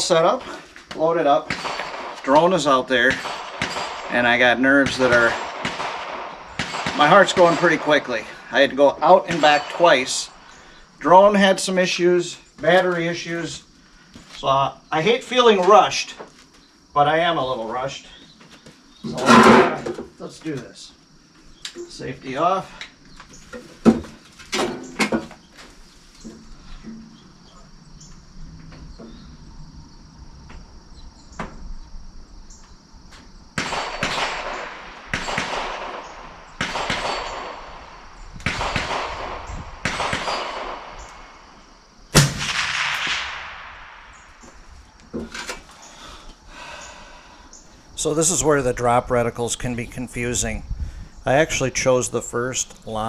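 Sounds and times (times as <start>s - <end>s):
suppressed rifle shots: 1.5s - 2.5s, 3.1s - 4.2s, 5.0s - 8.0s, 33.6s - 37.9s, 38.5s - 41.2s, 42.2s - 44.2s.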